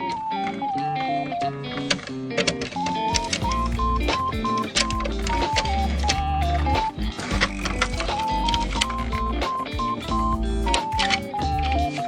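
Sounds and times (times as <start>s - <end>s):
background music with drum beat: 3.2s - 12.0s.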